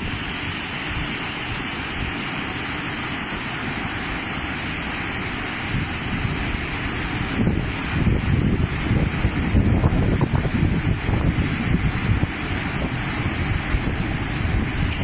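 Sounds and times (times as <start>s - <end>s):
rushing water hiss: 0.0s - 15.0s.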